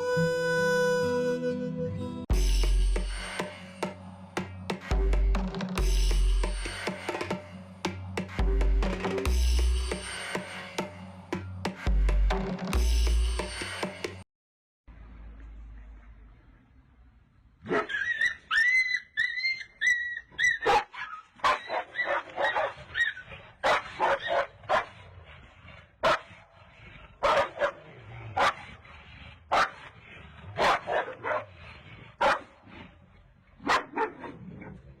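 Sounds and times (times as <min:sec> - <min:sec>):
dog yapping: 0:17.6 - 0:24.9, 0:27.2 - 0:27.8, 0:30.6 - 0:31.4, 0:32.2 - 0:32.5, 0:33.6 - 0:34.4
dog whining: 0:17.8 - 0:22.2.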